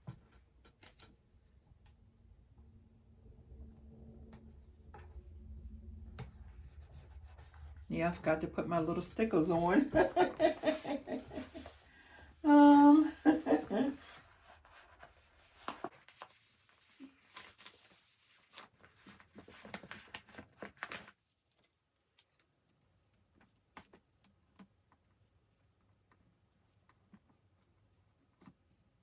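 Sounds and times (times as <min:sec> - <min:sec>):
person humming: 0:12.4 - 0:14.0
person murmuring: 0:12.4 - 0:14.1.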